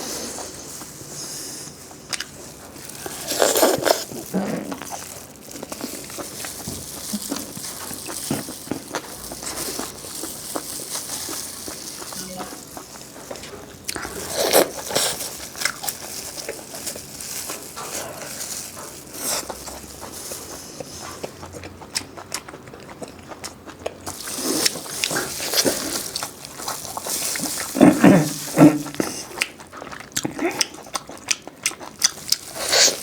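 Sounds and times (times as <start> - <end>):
biting and chewing food: 0.0 - 33.0.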